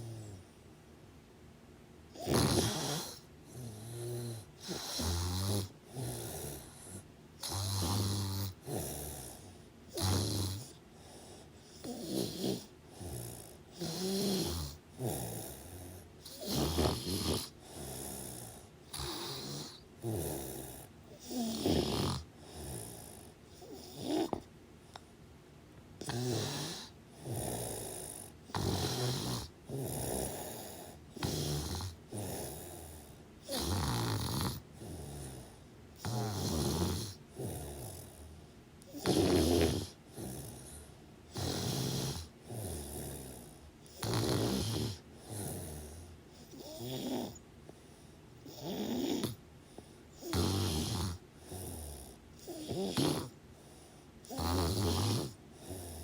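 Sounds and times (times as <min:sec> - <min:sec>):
person snoring: 0:02.2 - 0:24.4, 0:26.0 - 0:47.4, 0:48.4 - 0:53.4, 0:54.2 - 0:56.0.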